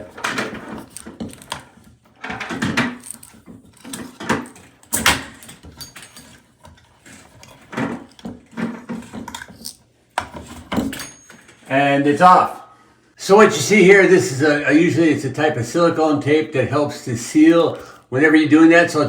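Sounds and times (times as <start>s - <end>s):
plastic scraping on threads: 0.0s - 10.9s.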